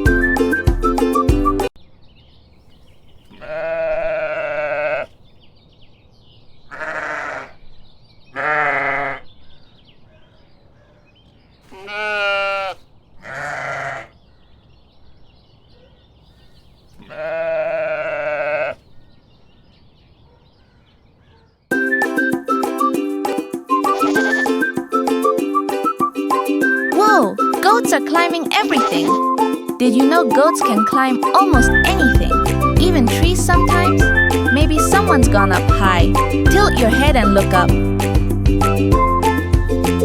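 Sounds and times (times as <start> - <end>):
sheep bleating: 3.3 - 5.1, 6.7 - 7.6, 8.3 - 9.2, 11.6 - 14.2, 17.0 - 18.8, 23.9 - 24.5, 28.7 - 29.2.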